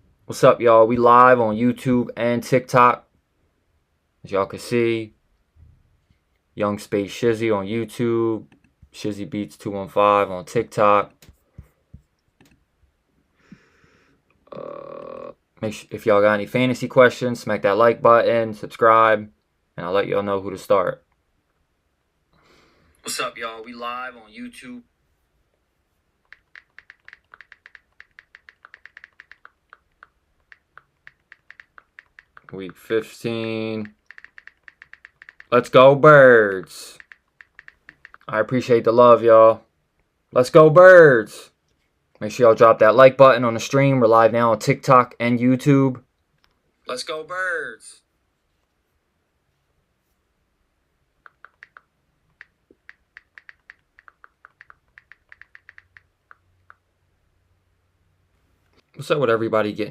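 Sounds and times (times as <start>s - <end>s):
computer keyboard typing: 26.3s - 33.1s, 33.7s - 35.8s, 36.9s - 38.4s, 51.2s - 56.8s.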